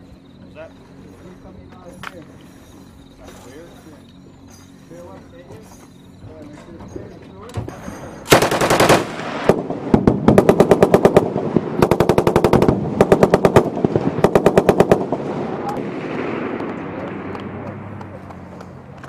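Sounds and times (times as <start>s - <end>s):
lingering rumble: 8.2s - 19.0s
machine gun bursts: 8.3s - 15.2s.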